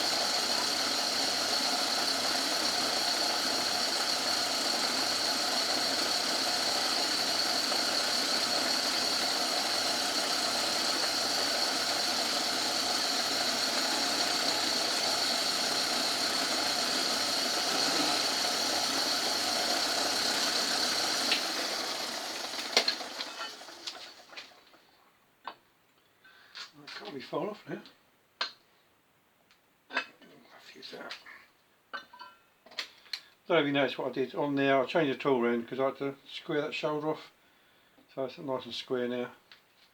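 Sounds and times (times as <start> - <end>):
lathe running with high whine: 0.0 - 24.6.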